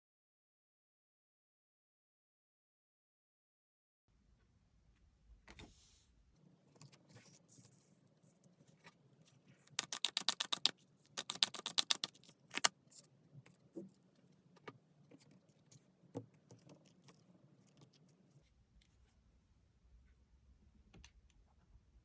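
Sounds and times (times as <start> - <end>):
cards shuffling clicks: 9.7 - 12.7
card snap: 9.8 - 12.7.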